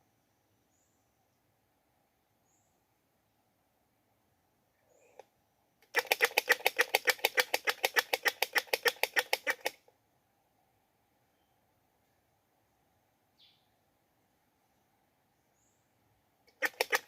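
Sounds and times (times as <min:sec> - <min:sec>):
squirrel chattering: 0:16.5 - 0:17.0.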